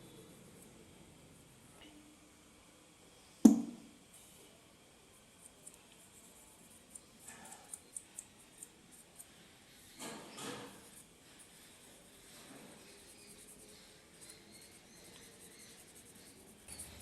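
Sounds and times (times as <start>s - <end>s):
sharp knock on laptop: 3.5s - 3.9s.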